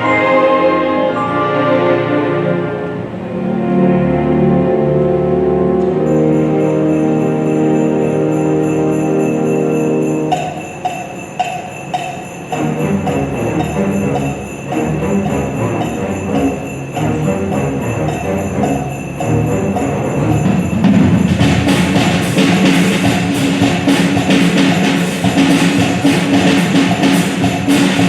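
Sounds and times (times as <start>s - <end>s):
symphony orchestra playing: 0.0s - 28.0s
steady percussion beat: 6.1s - 28.0s.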